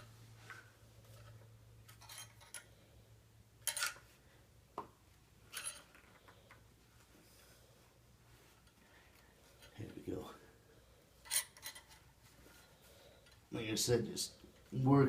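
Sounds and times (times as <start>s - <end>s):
low steady hum: 0.0s - 15.0s
rifle parts scraping and clicking: 0.5s - 2.8s, 3.6s - 4.1s, 11.2s - 13.4s.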